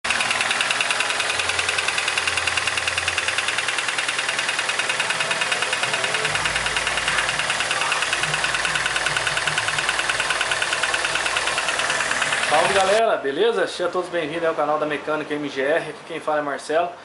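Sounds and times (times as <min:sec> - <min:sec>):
car engine idling: 0:00.0 - 0:13.0
valvetrain tapping: 0:04.6 - 0:13.0.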